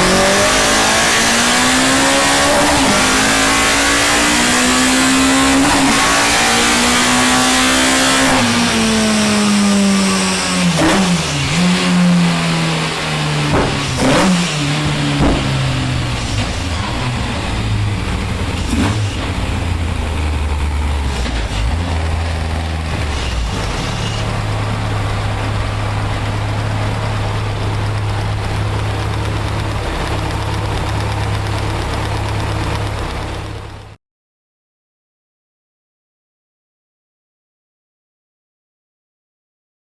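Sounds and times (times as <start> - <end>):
race car engine revving and idling: 0.0 - 34.0
exhaust pops and bangs: 13.5 - 14.4, 15.1 - 16.6.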